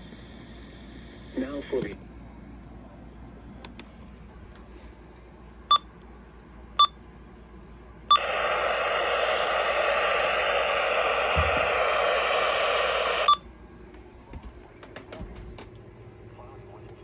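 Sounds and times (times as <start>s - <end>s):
radio static hiss: 1.0s - 2.0s, 8.2s - 13.3s
radio click: 8.2s - 13.3s.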